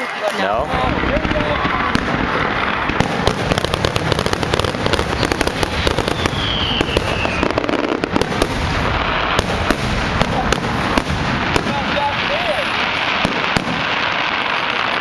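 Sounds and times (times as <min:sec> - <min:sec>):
fireworks bangs and crackles: 0:00.0 - 0:15.0
falling firework whistle: 0:02.9 - 0:10.6.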